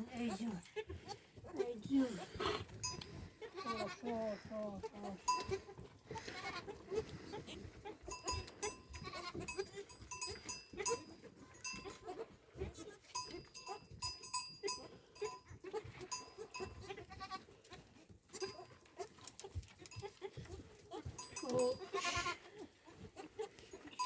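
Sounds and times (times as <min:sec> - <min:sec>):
goat bells clinking: 0:00.0 - 0:24.0
goats bleating: 0:00.0 - 0:24.0.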